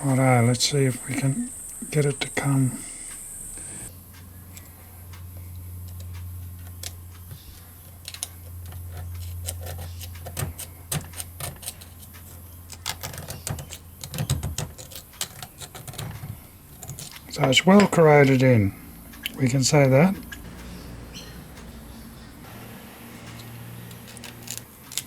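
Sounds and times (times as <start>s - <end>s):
steady low hum: 0.0s - 14.1s, 14.8s - 25.0s
sharp metal tool clicks and scrapes: 7.9s - 18.5s, 23.2s - 25.0s.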